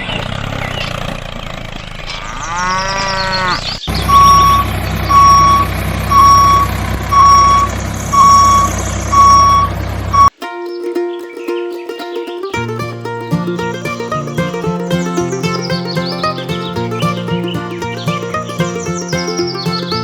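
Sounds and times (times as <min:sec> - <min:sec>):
low idling engine: 0:03.9 - 0:10.3, 0:12.6 - 0:20.0
reversing alarm beeping: 0:04.0 - 0:10.3.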